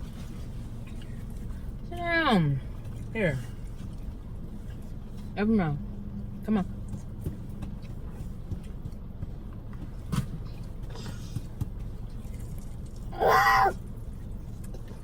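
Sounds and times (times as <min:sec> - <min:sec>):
wet smacking and chewing: 0:10.1 - 0:15.0.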